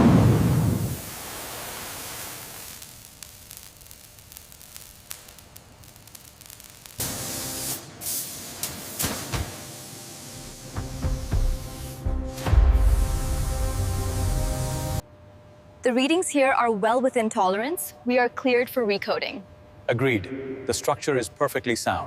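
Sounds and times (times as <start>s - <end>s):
steady hissing noise: 0.0s - 15.1s.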